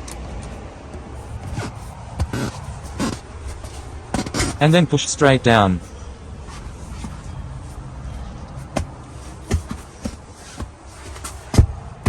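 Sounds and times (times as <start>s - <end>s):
low steady hum: 0.0s - 12.0s
seat cushion knocks and thuds: 1.2s - 4.8s, 5.5s - 7.9s, 8.5s - 11.9s.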